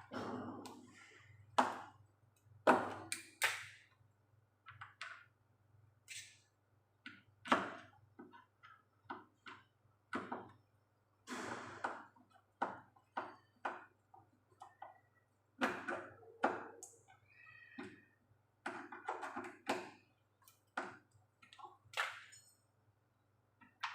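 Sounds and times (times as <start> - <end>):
tools and parts clicking and knocking: 18.6 - 22.7.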